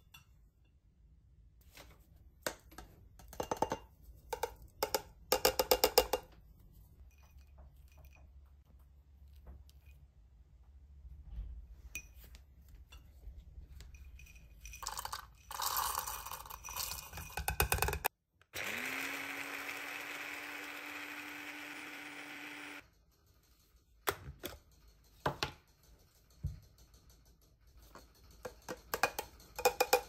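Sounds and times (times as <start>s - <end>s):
small electric motor spinning: 18.6s - 22.8s
rattling clicks and clatter: 22.8s - 30.0s.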